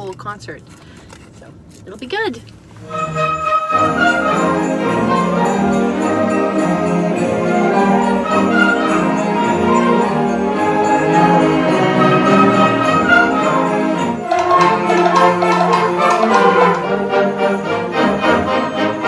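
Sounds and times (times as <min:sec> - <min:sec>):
concert band playing: 0:14.3 - 0:17.4.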